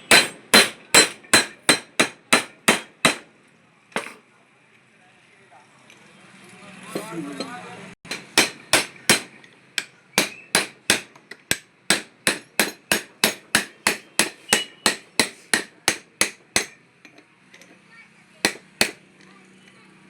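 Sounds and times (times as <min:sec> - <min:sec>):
hammer blows on metal: 0:08.1 - 0:16.8.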